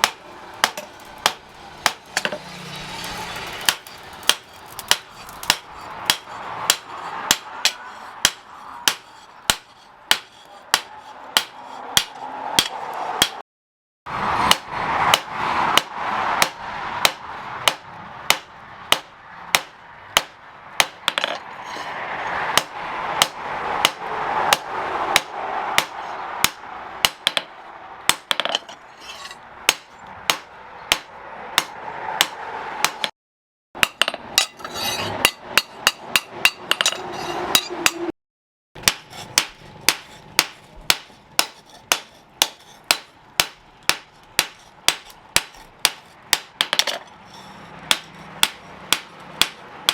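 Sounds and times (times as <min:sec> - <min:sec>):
hammer striking steel on anvil: 0:00.0 - 0:02.5, 0:03.3 - 0:13.4, 0:33.8 - 0:38.1, 0:38.8 - 0:49.9.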